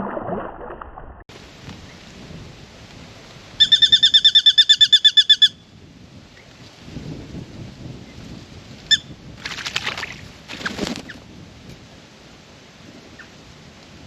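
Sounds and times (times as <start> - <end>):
bird splashing in water: 9.4 - 11.2.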